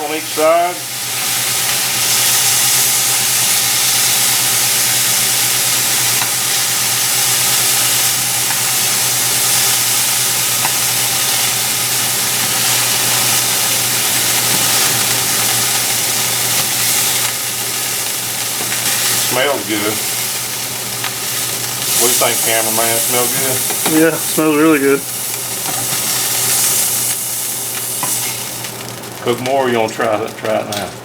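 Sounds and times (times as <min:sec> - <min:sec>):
meat sizzling in a pan: 0:00.0 - 0:30.5.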